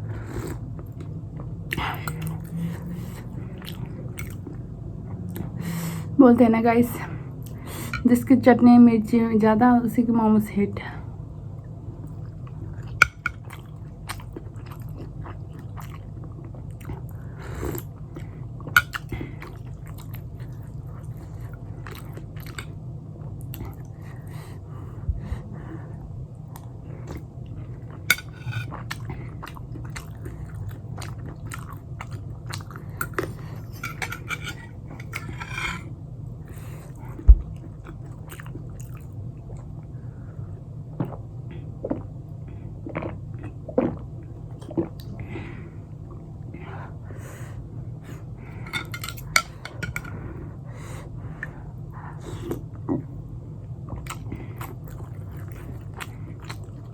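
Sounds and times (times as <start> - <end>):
steady low hum: 0.0 - 56.9
chewing and crunching food: 0.3 - 5.6, 12.0 - 24.5, 26.4 - 35.9, 36.5 - 39.9, 51.4 - 56.9.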